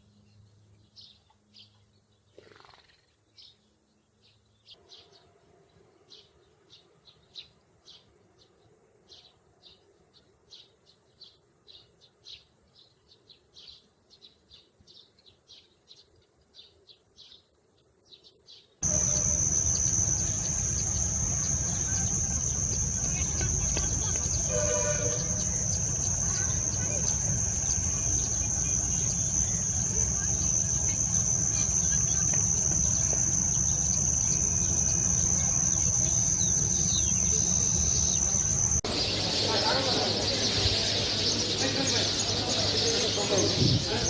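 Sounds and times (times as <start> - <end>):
sparrow chirping: 18.1 - 44.0
loud steady noise with high whine: 18.8 - 44.0.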